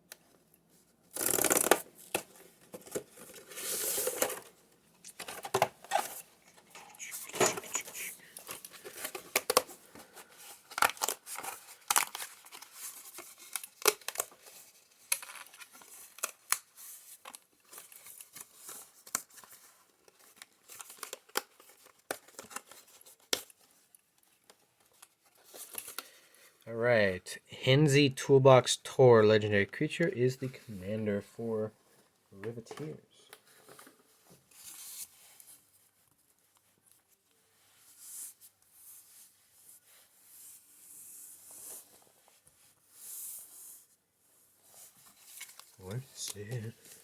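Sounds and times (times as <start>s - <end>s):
clicks and rustles of packaging: 1.1s - 26.6s, 44.8s - 47.0s
plastic wrapping tearing: 1.2s - 2.2s.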